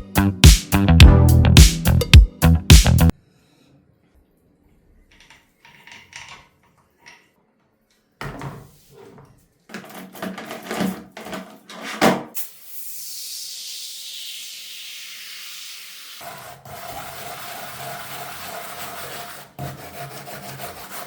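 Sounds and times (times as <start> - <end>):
tools knocking and clattering: 9.7 - 12.3.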